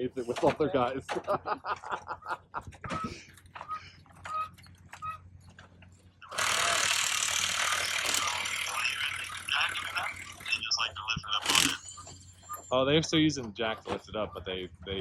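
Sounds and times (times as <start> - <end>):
loud rapid mechanical rattling: 2.7 - 13.4.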